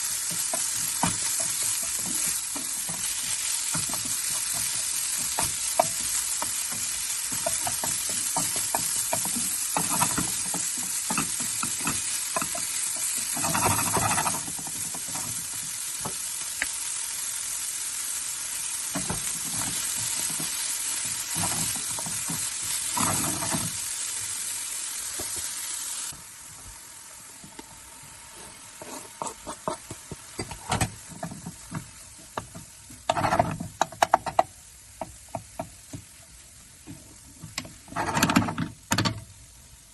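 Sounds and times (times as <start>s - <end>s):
spoon knocking and scraping pan: 0.0s - 16.3s, 18.9s - 24.2s, 28.3s - 39.3s
food sizzling in a frying pan: 0.0s - 39.9s.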